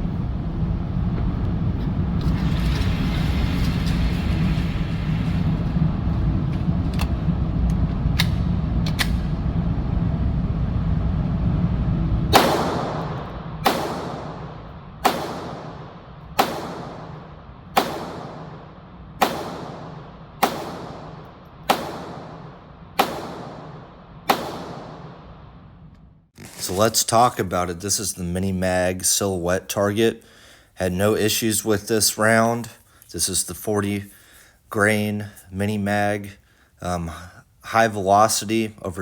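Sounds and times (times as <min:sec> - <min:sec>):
steady low rumble: 0:00.0 - 0:39.0
pistol shots: 0:12.3 - 0:25.3.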